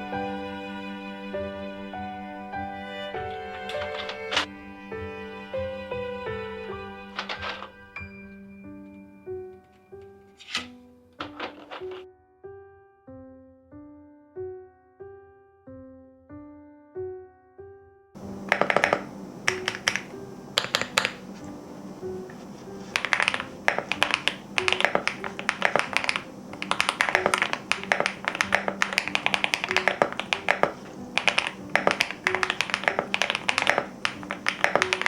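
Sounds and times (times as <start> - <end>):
piano notes: 0.0 - 35.0
soft background music: 0.0 - 35.0
mechanical keyboard typing: 3.7 - 4.5, 7.2 - 7.7, 18.4 - 21.2, 22.9 - 35.0.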